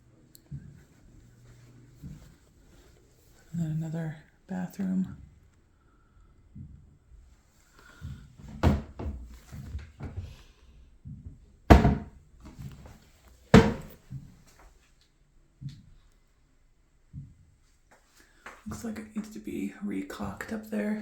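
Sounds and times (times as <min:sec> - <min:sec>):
soft thuds: 0:08.0 - 0:10.3, 0:11.1 - 0:14.3
sharp knocks: 0:11.7 - 0:12.1, 0:13.6 - 0:14.0.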